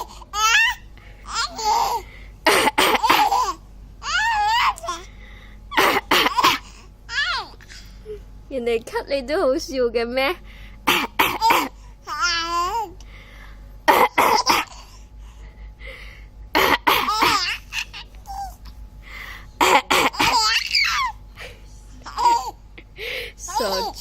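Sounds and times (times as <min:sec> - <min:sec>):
baby laughing in giggles: 0:00.0 - 0:02.0, 0:16.6 - 0:18.6, 0:19.6 - 0:21.2, 0:22.0 - 0:22.6
woman coughing: 0:02.4 - 0:03.6, 0:05.7 - 0:06.6, 0:10.8 - 0:11.8, 0:13.9 - 0:14.9, 0:16.5 - 0:17.6, 0:19.6 - 0:20.6.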